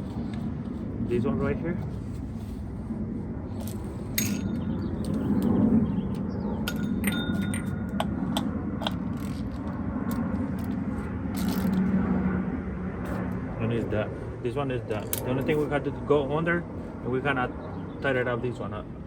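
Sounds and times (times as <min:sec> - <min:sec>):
steady low hum: 0:00.0 - 0:19.0
clicks and clinks of filter parts: 0:03.6 - 0:05.5, 0:06.7 - 0:09.6.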